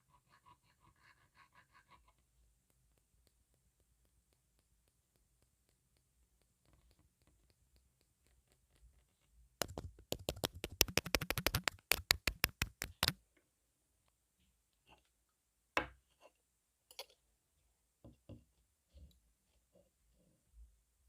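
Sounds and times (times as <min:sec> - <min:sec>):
fingers tapping a microphone: 0:09.6 - 0:13.2.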